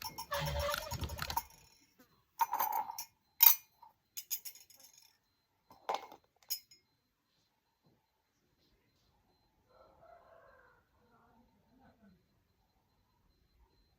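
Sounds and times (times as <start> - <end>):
spoon clinking against glass: 0.0 - 1.6, 2.4 - 5.1, 5.7 - 6.8.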